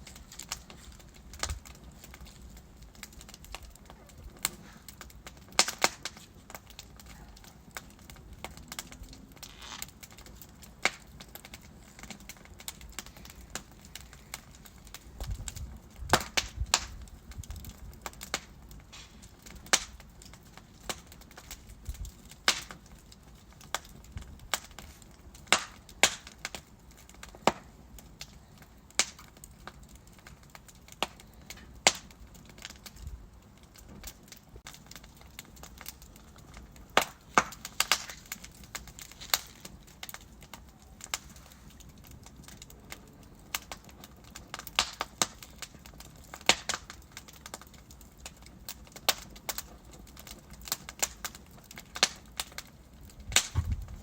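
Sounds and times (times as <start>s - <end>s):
burning logs crackling: 0.0s - 54.0s
flames hissing and rumbling: 0.0s - 54.0s.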